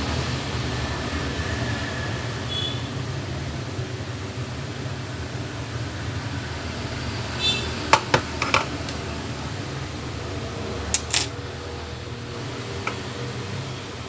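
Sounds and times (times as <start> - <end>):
fan humming: 6.7 - 14.0
small tools clicking and tapping: 7.9 - 9.1, 10.9 - 11.3, 12.8 - 13.1.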